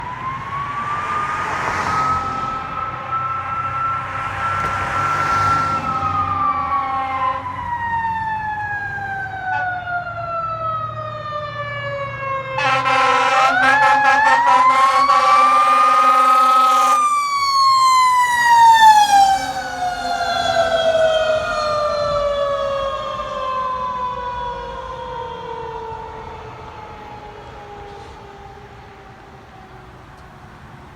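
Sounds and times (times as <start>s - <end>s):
mechanical siren wailing: 0.0s - 28.8s
air horns blasting: 6.8s - 7.6s, 9.3s - 10.0s, 12.5s - 17.3s.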